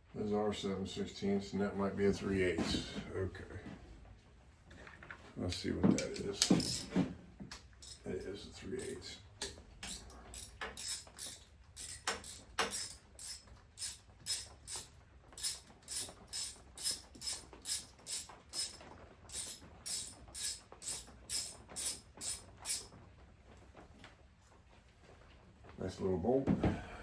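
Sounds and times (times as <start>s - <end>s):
hand ratchet clicking: 6.4s - 6.9s, 7.8s - 8.0s, 8.8s - 9.0s, 9.8s - 22.9s.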